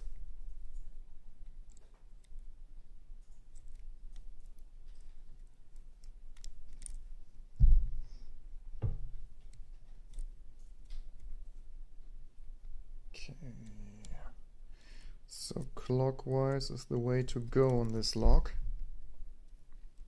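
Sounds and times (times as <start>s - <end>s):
dull thumps: 7.6s - 8.0s, 8.7s - 9.3s
combination lock dials clicking: 16.8s - 18.3s.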